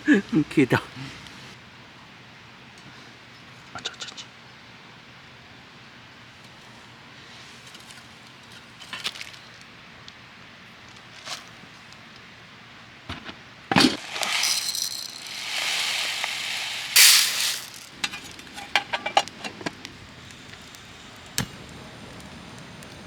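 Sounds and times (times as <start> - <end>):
hissing rush: 14.0 - 17.9.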